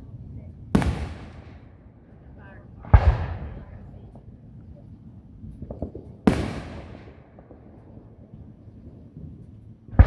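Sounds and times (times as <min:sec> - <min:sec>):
firework booms echoing: 0:00.7 - 0:02.2, 0:02.8 - 0:04.0, 0:05.6 - 0:10.0
small firework pops: 0:05.5 - 0:07.9.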